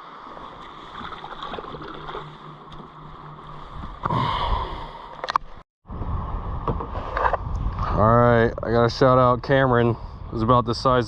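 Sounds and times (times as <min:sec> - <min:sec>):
water splashing: 0:00.0 - 0:04.0
river water lapping around kayak: 0:00.0 - 0:05.6.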